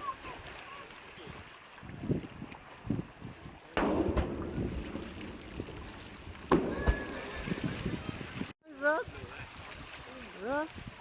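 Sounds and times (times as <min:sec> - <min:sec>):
fireworks shells bursting: 0:03.8 - 0:07.7.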